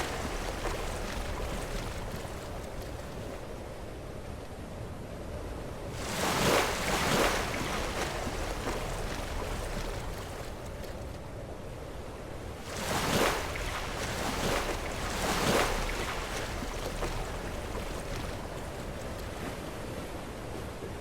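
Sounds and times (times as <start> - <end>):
waves breaking on rocks: 0.0 - 3.5, 6.0 - 11.0, 12.6 - 19.8.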